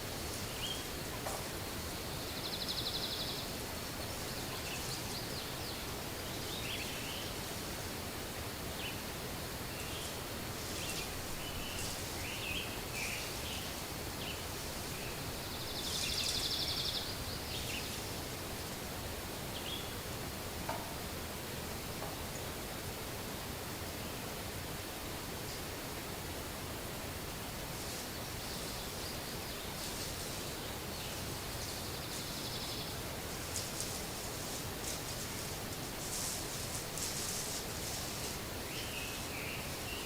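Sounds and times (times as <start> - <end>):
steady hiss: 0.0 - 40.0
songbird chirps: 0.1 - 7.8, 8.6 - 18.8, 19.5 - 20.1, 27.4 - 40.0.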